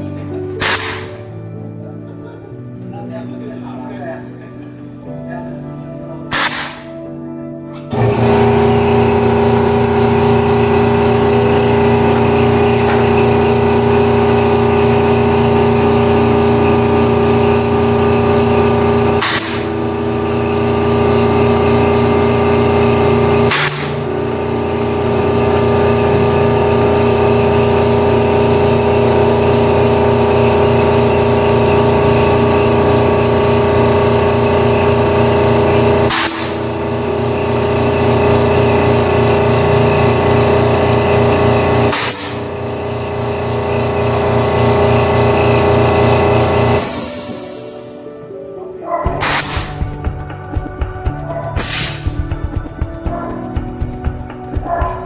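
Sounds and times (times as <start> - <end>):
air compressor droning: 0.0 - 55.0.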